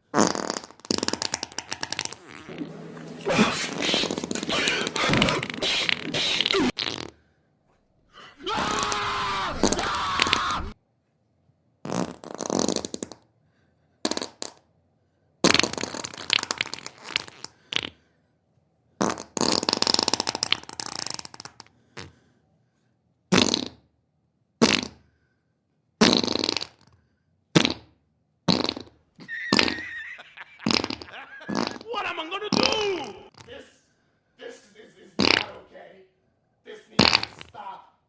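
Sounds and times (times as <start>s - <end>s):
wet fart sound effects: 0.0s - 7.2s, 11.8s - 13.3s, 14.0s - 14.6s, 15.4s - 18.0s, 19.0s - 22.1s, 23.3s - 23.9s, 24.6s - 25.0s, 26.0s - 27.0s, 27.6s - 31.9s, 32.5s - 33.5s, 35.2s - 35.6s, 37.0s - 37.6s.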